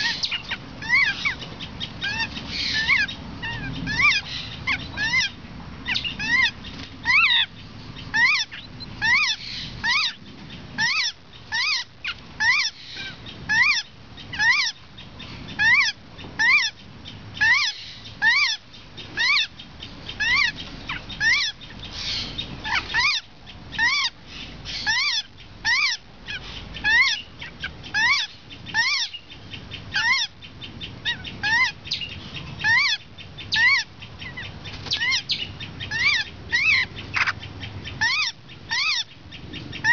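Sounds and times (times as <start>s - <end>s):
bird chicks begging calls: 0.0s - 39.9s.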